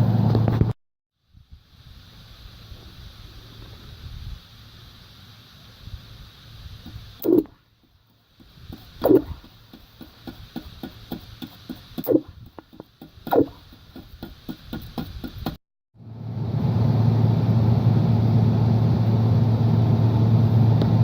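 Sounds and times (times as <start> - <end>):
welding arc crackling and popping: 2.1 - 15.6.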